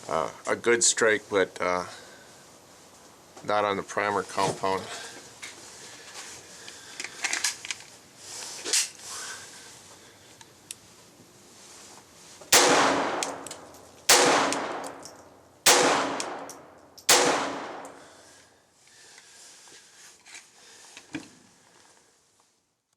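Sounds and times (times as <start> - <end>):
metallic handling clicks: 12.6 - 15.3, 16.1 - 18.0
gunshots with ringing echo: 12.6 - 18.2.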